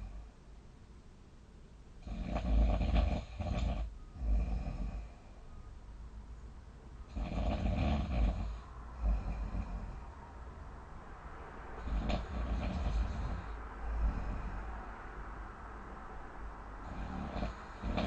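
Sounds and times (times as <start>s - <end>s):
person snoring heavily: 2.0s - 5.2s, 7.1s - 10.1s, 11.8s - 14.8s, 16.8s - 18.0s.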